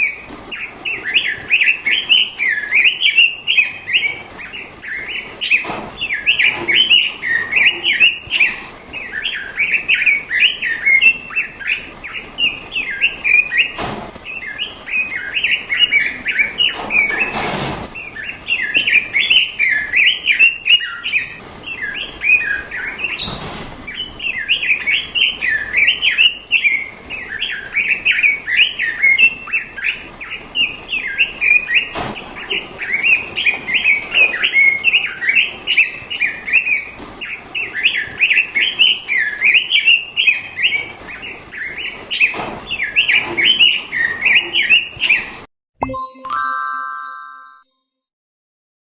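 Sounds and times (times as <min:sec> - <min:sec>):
songbird chattering song: 0:00.0 - 0:17.3, 0:18.0 - 0:45.4.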